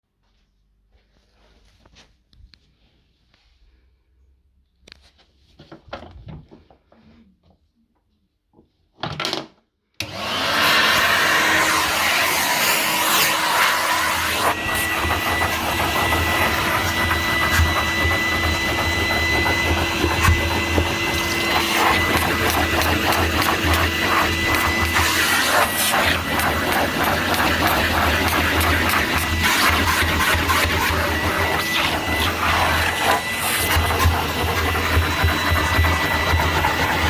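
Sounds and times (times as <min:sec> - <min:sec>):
vacuum cleaner running: 0:10.0 - 0:37.0.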